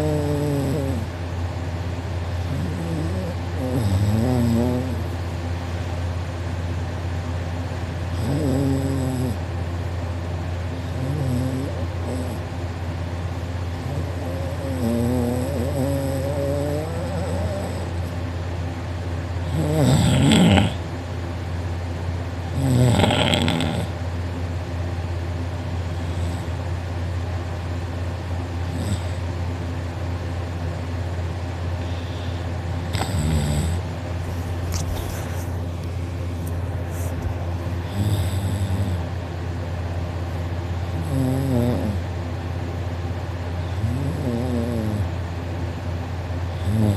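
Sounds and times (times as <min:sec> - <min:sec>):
man snoring loudly: 0:00.0 - 0:01.1, 0:02.5 - 0:05.1, 0:08.2 - 0:09.4, 0:10.9 - 0:12.4, 0:13.9 - 0:18.1, 0:19.5 - 0:20.8, 0:22.5 - 0:24.0, 0:28.7 - 0:29.2, 0:32.9 - 0:33.8, 0:37.8 - 0:39.0, 0:41.0 - 0:42.0, 0:43.8 - 0:45.1, 0:46.6 - 0:46.9
steady low hum: 0:00.0 - 0:46.9.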